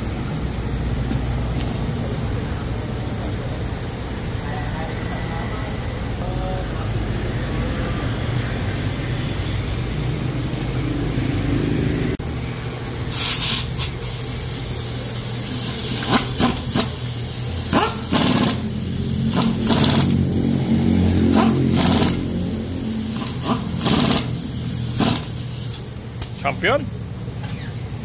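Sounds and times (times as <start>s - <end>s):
pneumatic tool air blasts: 13.1s - 20.2s, 21.3s - 26.4s.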